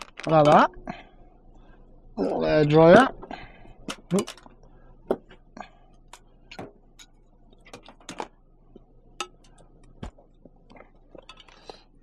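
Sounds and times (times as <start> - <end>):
scrap items clicking and knocking: 3.8 - 4.5, 9.2 - 11.9.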